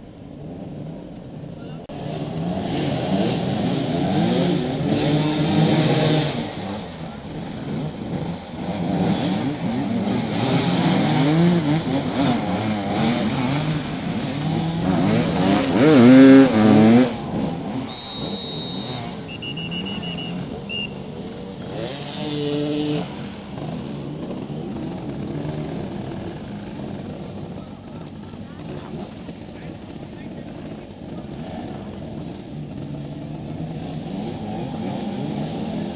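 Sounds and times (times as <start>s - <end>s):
motorcycle engines revving: 0.0s - 35.9s
short high whistle tones: 17.8s - 21.0s.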